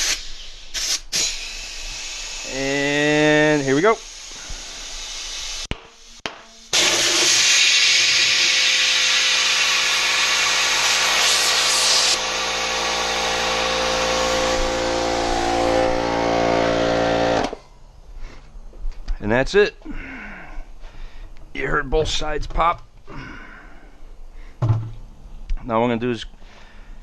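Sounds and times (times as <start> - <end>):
compressed air rushing into tire: 0.0 - 12.3
air compressor humming: 0.0 - 17.6.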